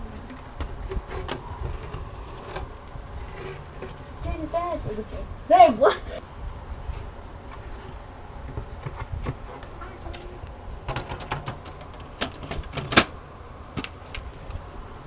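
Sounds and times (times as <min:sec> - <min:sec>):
steady low rumble: 0:00.0 - 0:11.0
irregular clicks and knocks: 0:10.9 - 0:13.1.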